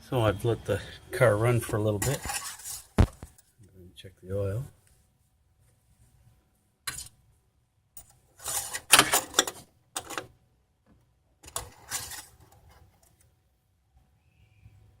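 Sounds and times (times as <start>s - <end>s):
dipstick scraping and rattling in tube: 1.9s - 3.0s.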